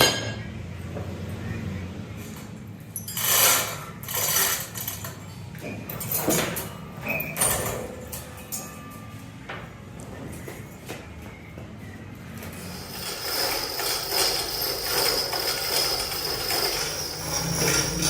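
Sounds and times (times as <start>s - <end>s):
workshop machine humming: 12.1s - 18.0s
rasping scraping noise: 12.6s - 18.0s.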